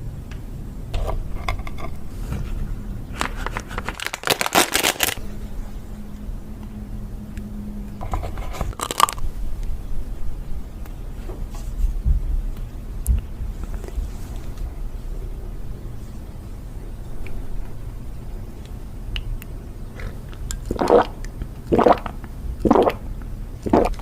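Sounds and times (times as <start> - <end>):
low steady hum: 0.0 - 24.0
eating crunching and scraping: 8.0 - 9.2.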